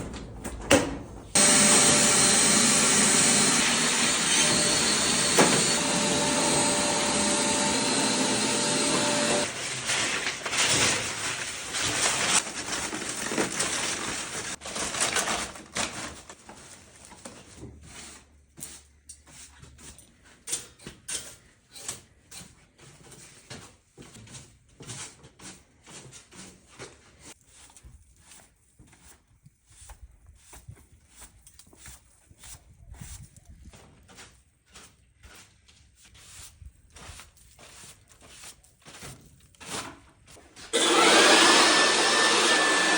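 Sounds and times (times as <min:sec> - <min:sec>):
machine motor whining: 0:01.4 - 0:09.5, 0:40.8 - 0:42.9.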